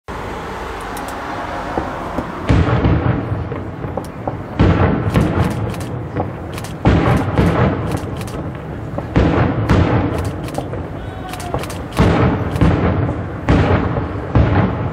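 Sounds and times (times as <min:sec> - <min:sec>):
rumbling echo: 0:01.6 - 0:14.9
firework crackling: 0:01.7 - 0:14.9
firework shells bursting: 0:02.5 - 0:13.1.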